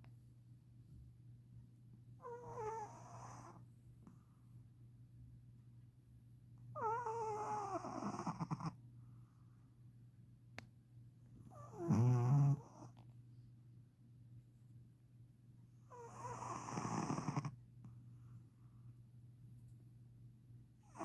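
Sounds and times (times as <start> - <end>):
dog snoring: 2.2 - 3.6, 6.8 - 8.8, 11.5 - 13.0, 15.9 - 17.6.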